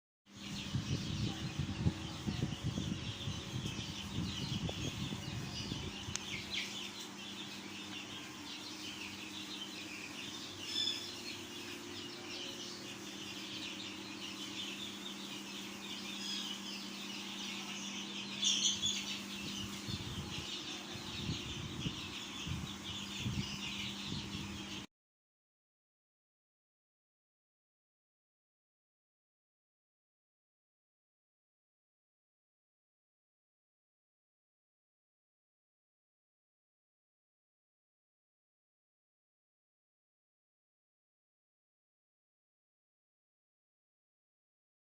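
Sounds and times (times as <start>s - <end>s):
chicks peeping: 0.4s - 24.9s
steady low hum: 0.4s - 24.9s.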